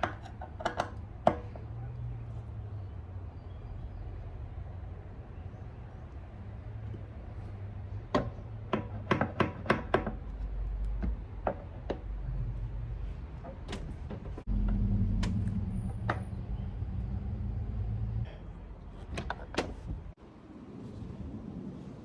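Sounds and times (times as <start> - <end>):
tools clicking and knocking: 0.0 - 1.6, 8.1 - 12.2.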